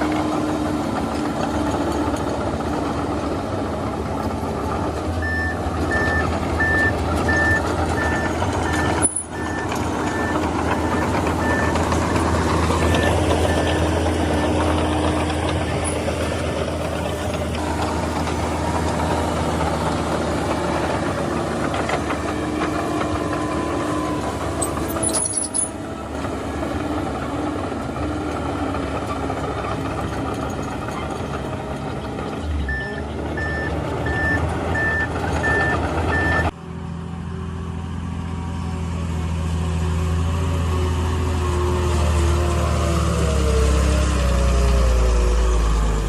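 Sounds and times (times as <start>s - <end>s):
heavy diesel machinery running: 0.0s - 46.0s
reversing alarm beeping: 5.2s - 11.9s, 12.8s - 14.5s, 32.7s - 36.5s.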